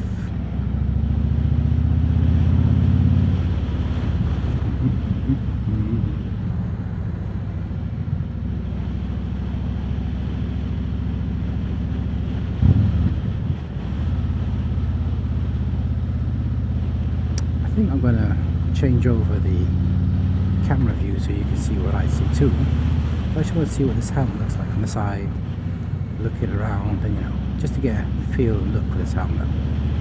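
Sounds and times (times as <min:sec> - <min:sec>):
motorcycle engine running: 0:03.4 - 0:22.6
wind buffeting microphone: 0:11.6 - 0:14.6.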